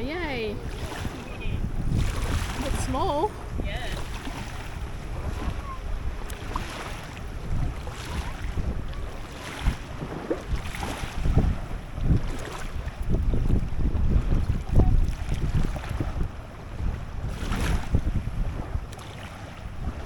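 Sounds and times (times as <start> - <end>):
water slapping around boat: 0.0 - 20.0
wind buffeting microphone: 0.0 - 20.0.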